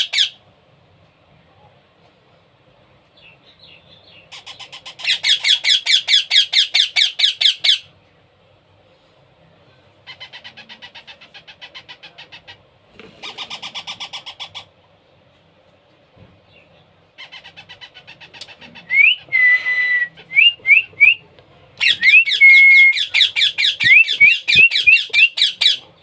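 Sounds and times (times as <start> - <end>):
parrot chick begging calls: 4.2 - 7.9, 17.2 - 19.3, 21.8 - 25.8.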